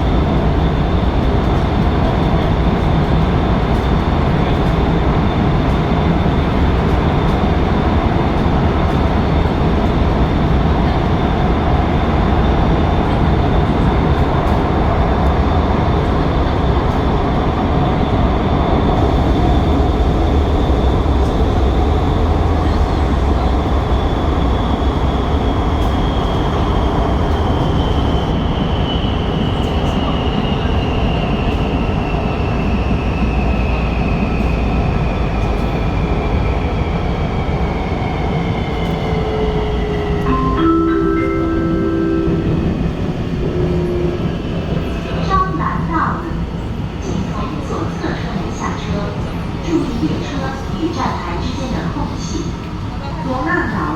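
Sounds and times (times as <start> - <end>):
metro train rumble: 0.0 - 53.9
train high whine: 0.0 - 53.9.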